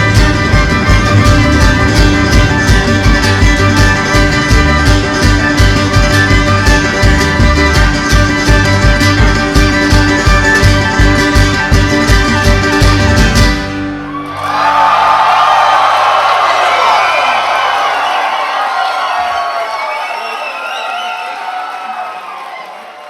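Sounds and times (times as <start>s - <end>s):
bluegrass guitar and fiddle music: 0.0s - 14.1s.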